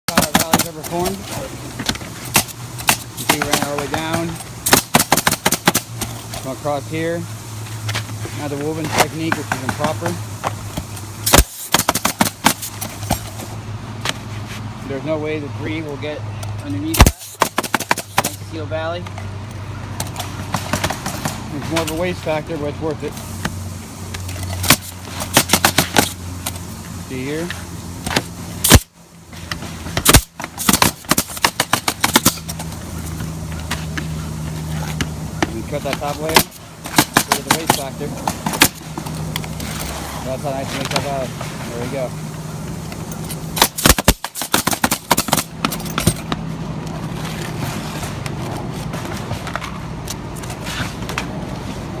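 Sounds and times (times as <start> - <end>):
shingle clicks and scrapes: 0.1 - 6.5, 7.8 - 14.7, 16.6 - 18.5, 23.4 - 26.7, 28.0 - 41.6, 43.0 - 51.4
loud sharp bangs: 2.3 - 5.9, 11.2 - 13.2, 16.9 - 18.4, 30.0 - 32.4, 43.6 - 45.6.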